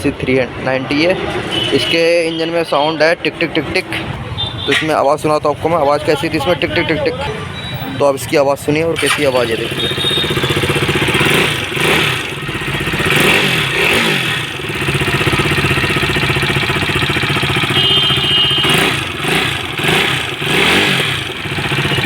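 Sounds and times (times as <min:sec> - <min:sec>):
motorcycle engine revving: 0:08.8 - 0:22.0.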